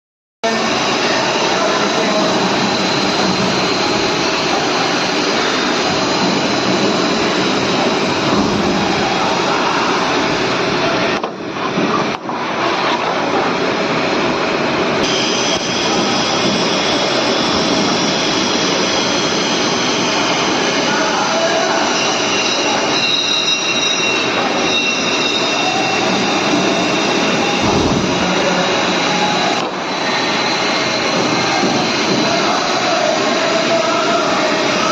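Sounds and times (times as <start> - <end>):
cnc machine running: 0.4 - 11.8
machine whirring: 0.5 - 34.9.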